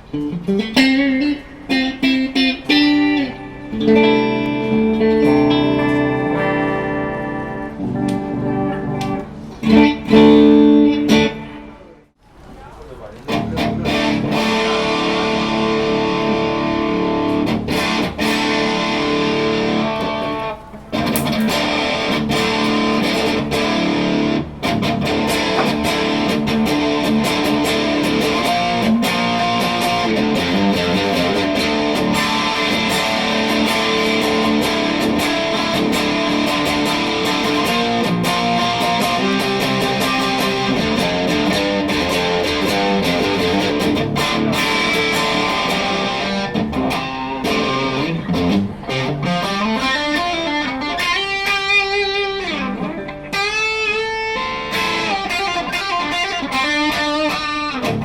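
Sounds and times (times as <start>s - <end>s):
electric guitar through an amp: 0.0s - 58.0s.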